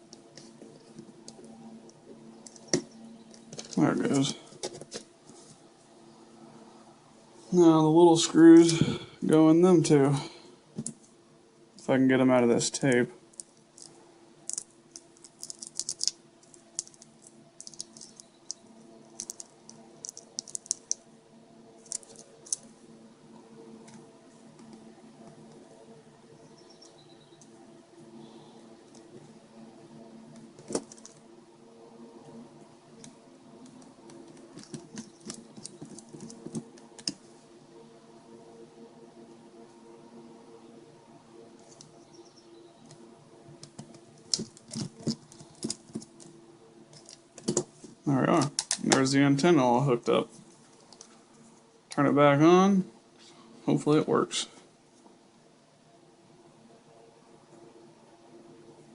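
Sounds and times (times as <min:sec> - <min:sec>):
low steady hum: 0:00.0 - 0:58.9
small parts clicking and tapping: 0:02.4 - 0:05.0, 0:13.3 - 0:21.0, 0:21.8 - 0:22.7, 0:30.4 - 0:31.2, 0:33.0 - 0:37.2, 0:43.6 - 0:47.8, 0:48.4 - 0:49.0.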